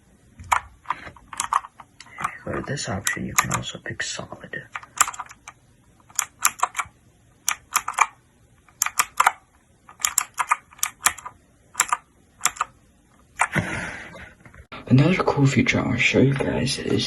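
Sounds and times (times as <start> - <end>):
mechanical keyboard clicks: 0.4 - 3.7, 4.7 - 12.8.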